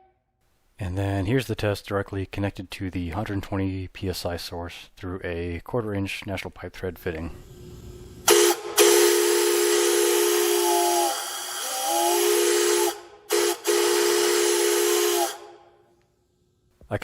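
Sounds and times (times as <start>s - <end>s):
steam whistle chord: 8.3s - 15.6s.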